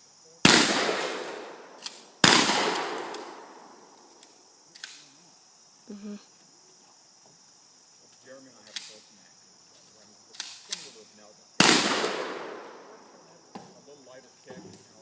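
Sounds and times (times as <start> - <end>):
faint high hiss: 0.0 - 15.0
gunshot echo: 0.4 - 3.9, 11.6 - 13.0
sharp gunshots: 0.4 - 3.9, 11.6 - 13.0.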